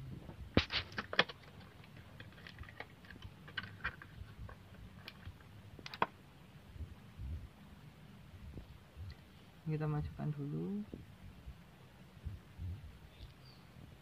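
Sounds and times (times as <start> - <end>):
low steady hum: 0.0 - 14.0
plastic parts clicking and tapping: 0.6 - 6.2.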